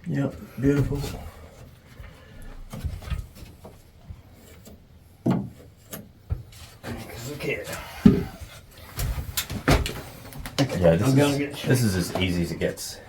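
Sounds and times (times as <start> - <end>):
timber and plasterboard knocking: 2.6 - 6.5, 8.0 - 10.8.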